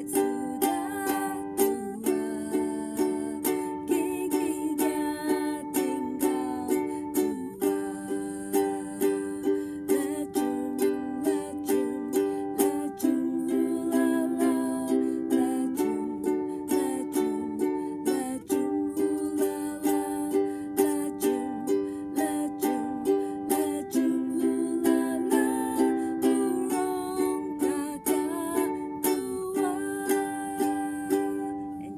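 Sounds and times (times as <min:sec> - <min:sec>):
ukulele strumming: 0:00.0 - 0:31.9.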